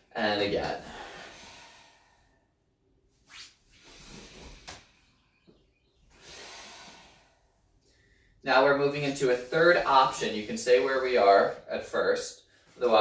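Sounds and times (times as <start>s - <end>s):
person exhaling breathily: 0.8s - 2.5s, 6.1s - 8.3s.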